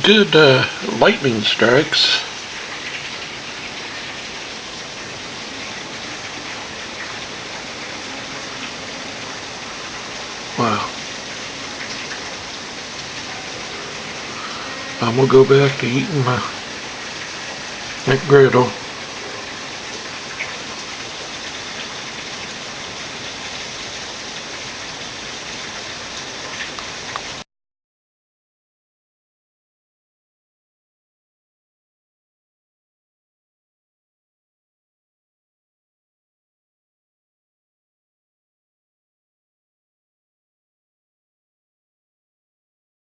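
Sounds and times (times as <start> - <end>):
heavy rain pouring: 0.0 - 27.5.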